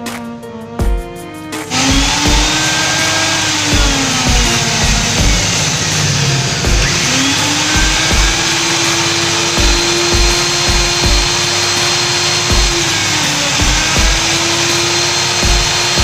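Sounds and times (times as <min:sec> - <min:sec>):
circular saw running: 0:01.7 - 0:16.0
dull low thumps: 0:01.8 - 0:08.8, 0:09.4 - 0:11.5, 0:12.5 - 0:14.5.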